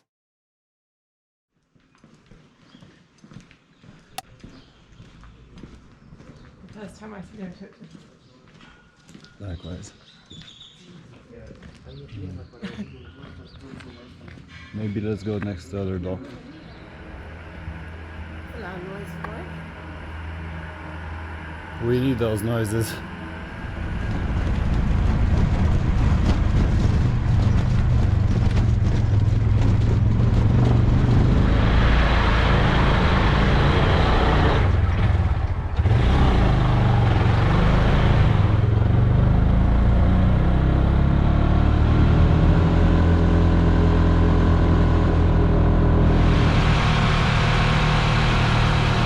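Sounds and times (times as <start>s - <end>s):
small vehicle engine running: 16.4s - 49.0s.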